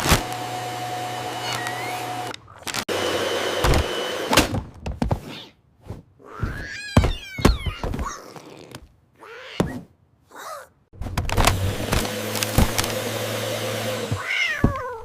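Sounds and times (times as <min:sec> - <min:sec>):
vacuum cleaner motor humming: 0:00.0 - 0:04.4, 0:11.4 - 0:14.8
cat crying: 0:01.3 - 0:02.6, 0:06.2 - 0:10.8, 0:14.2 - 0:15.0
thumps: 0:05.9 - 0:08.2.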